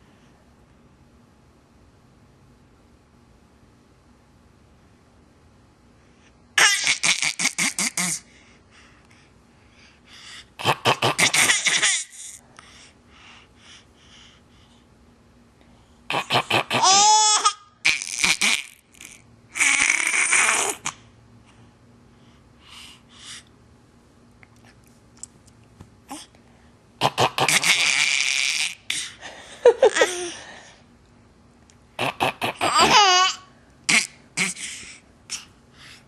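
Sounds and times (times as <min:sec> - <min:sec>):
person clearing throat: 0:32.0 - 0:33.2.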